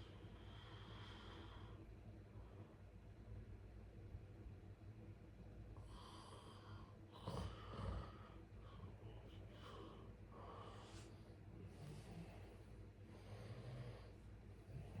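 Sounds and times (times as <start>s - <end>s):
person breathing in sleep: 0.4s - 1.9s, 13.1s - 15.0s.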